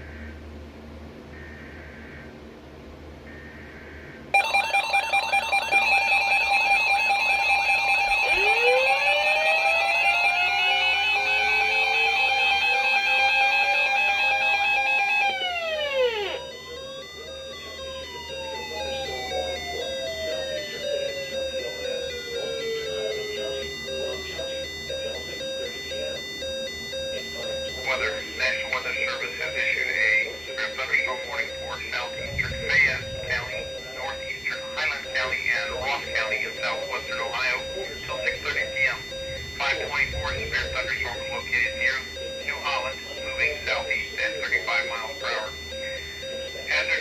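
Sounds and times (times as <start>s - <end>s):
rising siren tone: 4.4s - 47.0s
steady beeping tones: 4.4s - 47.0s
warbling alarm tone: 4.4s - 47.0s.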